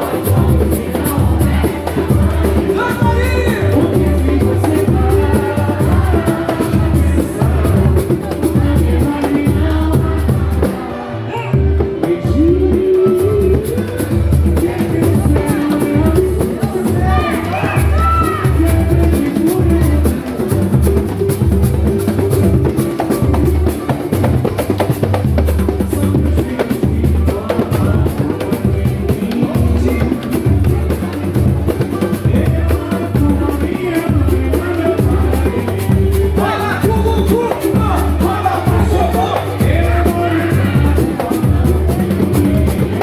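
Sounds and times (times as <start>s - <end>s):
dense percussion: 0.0s - 11.0s, 11.6s - 43.0s
voices singing: 0.0s - 43.0s
deep pulsing bass beat: 11.6s - 43.0s.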